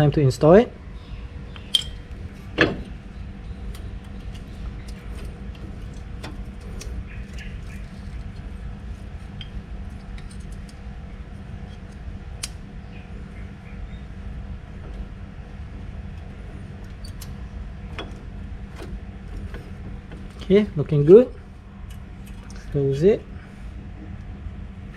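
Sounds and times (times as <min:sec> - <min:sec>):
low background hum: 0:00.0 - 0:24.9
metal knocks: 0:01.6 - 0:03.0
light metal clicks: 0:16.2 - 0:20.7.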